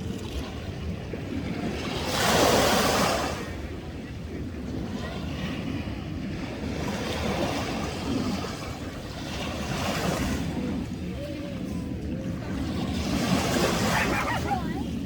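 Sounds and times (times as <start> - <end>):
waves washing in: 0.0 - 15.0
wind on microphone: 0.0 - 15.0.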